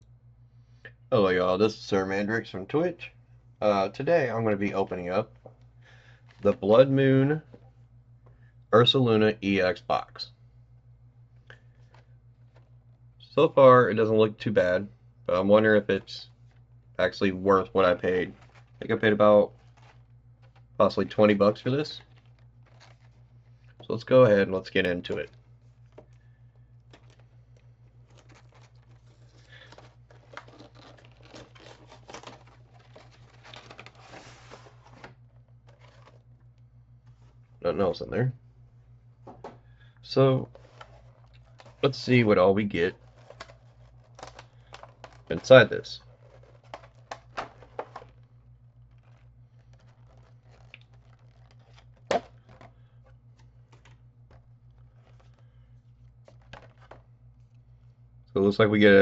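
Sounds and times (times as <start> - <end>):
steady low hum: 0.0 - 59.0
plastic wrapping crinkling: 17.6 - 24.0, 24.6 - 37.5, 39.2 - 58.2.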